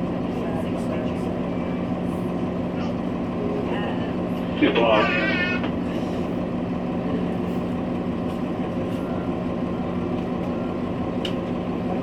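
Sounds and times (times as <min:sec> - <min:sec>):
bus engine running: 0:00.0 - 0:12.0
ride rumble: 0:00.0 - 0:12.0.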